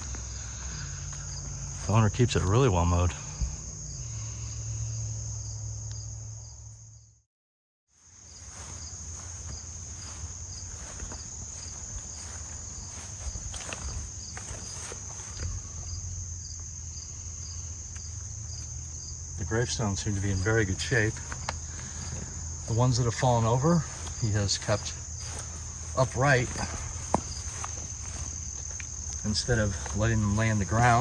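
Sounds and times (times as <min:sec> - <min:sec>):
footsteps through grass: 0:00.0 - 0:03.4, 0:07.9 - 0:31.0
crickets trilling: 0:00.0 - 0:07.1, 0:08.0 - 0:31.0.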